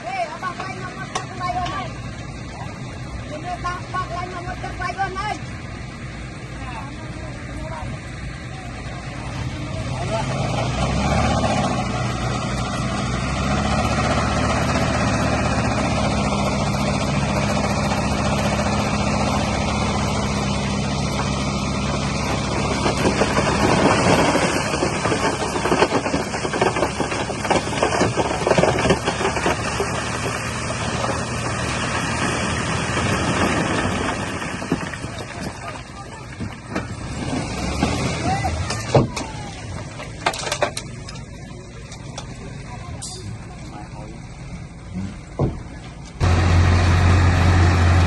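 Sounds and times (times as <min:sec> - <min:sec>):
bulldozer diesel engine running: 0:00.0 - 0:48.0
clattering and knocking of stone: 0:22.6 - 0:31.6, 0:32.9 - 0:36.9, 0:39.9 - 0:41.2.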